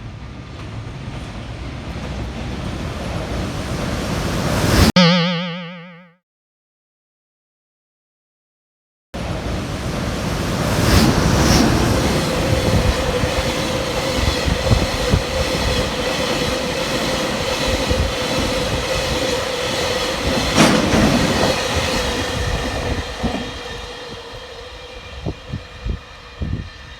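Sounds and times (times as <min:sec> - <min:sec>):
train wheels rumbling on rail: 0:00.0 - 0:04.8, 0:09.2 - 0:26.9
train whine: 0:09.2 - 0:26.9
wheels clattering over rail joints: 0:17.9 - 0:22.4.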